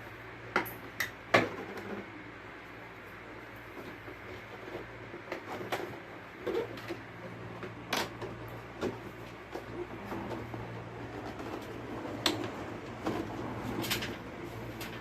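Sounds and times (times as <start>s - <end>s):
steady low hum: 0.0s - 15.0s
knocks and clicks handling unit: 4.3s - 15.0s.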